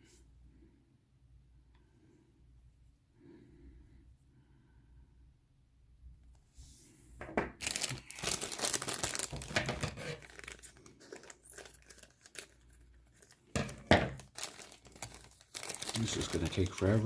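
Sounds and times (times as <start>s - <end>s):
plastic bag crinkling and tearing: 7.6s - 17.0s.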